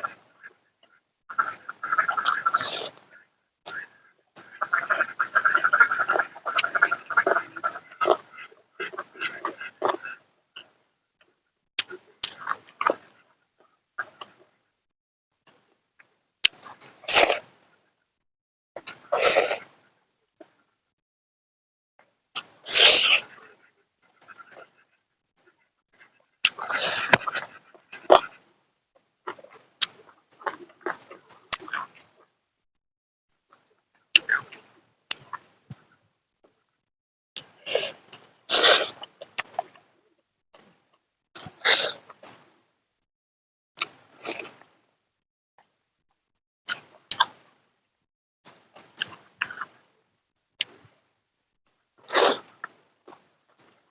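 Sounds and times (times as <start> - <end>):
mouth slurping: 2.2 - 3.0, 16.4 - 17.4, 18.8 - 19.7, 22.4 - 23.4, 26.4 - 28.4, 37.4 - 39.7, 41.4 - 42.4, 43.8 - 44.6, 52.0 - 53.2
lips clicking: 11.8 - 13.1, 16.4 - 17.5, 18.8 - 19.7, 22.4 - 23.4, 25.4 - 28.4, 29.3 - 32.3, 33.5 - 35.9, 37.4 - 39.8, 41.4 - 42.4, 43.8 - 44.8, 46.7 - 47.4, 48.5 - 49.8, 50.6 - 50.9, 52.0 - 53.8.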